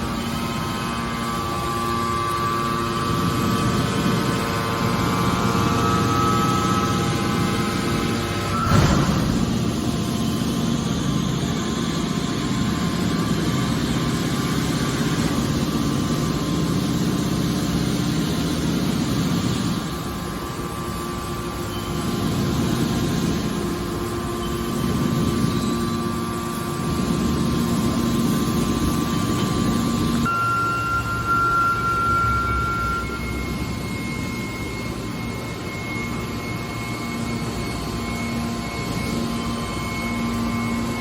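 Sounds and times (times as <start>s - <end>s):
hydraulic baler machine drone: 0.0s - 41.0s.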